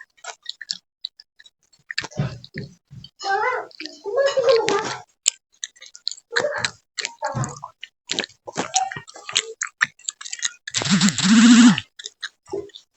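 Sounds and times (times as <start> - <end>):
gum chewing and smacking: 0.1 - 2.8, 5.2 - 12.9
drawn-out voiced sound: 10.8 - 11.8.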